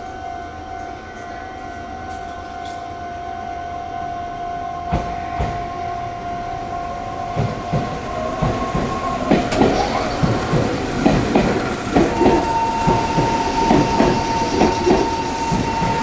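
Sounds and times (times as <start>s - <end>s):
steady high tone: 0.0s - 16.0s
train wheels knocking over rail joints: 7.3s - 16.0s.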